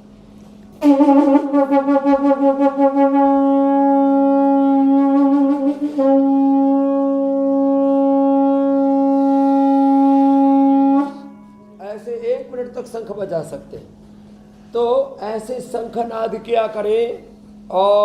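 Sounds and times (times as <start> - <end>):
conch shell blown: 0.3 - 11.8.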